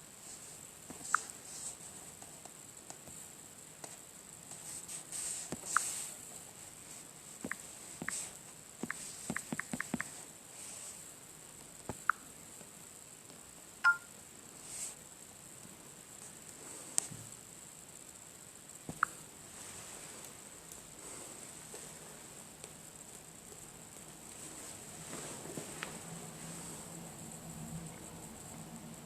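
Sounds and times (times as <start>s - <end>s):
short bright blip: 13.8s - 14.1s
soft rustling: 19.4s - 23.2s, 24.0s - 26.9s.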